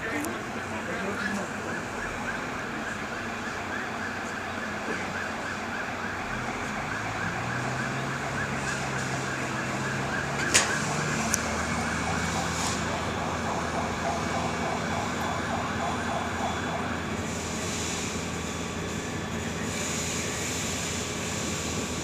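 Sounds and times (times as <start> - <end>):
emergency vehicle siren: 0.0 - 22.0
street noise: 0.0 - 22.0.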